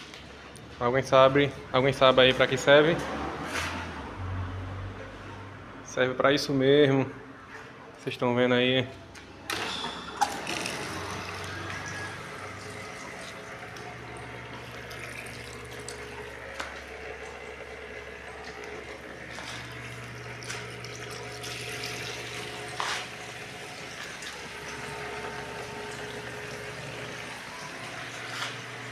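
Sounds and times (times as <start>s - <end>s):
small pump humming: 9.5s - 28.9s
liquid pouring and splashing: 10.2s - 28.9s.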